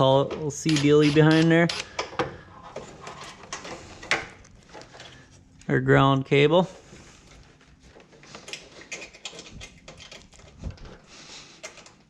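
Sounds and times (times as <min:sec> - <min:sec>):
clicks and rattles of wiring: 0:00.0 - 0:05.7, 0:07.3 - 0:12.0.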